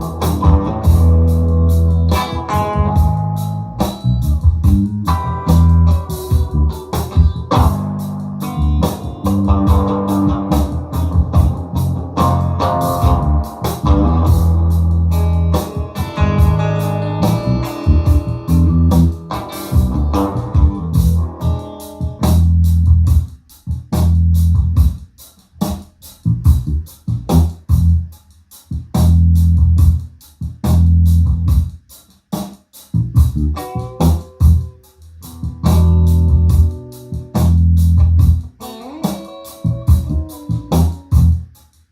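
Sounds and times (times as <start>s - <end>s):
guitar: 0.0s - 23.3s, 33.3s - 41.5s
drum hits: 0.0s - 28.1s
heavy bass line: 0.0s - 28.2s, 28.8s - 31.9s, 33.0s - 38.6s, 39.5s - 41.5s.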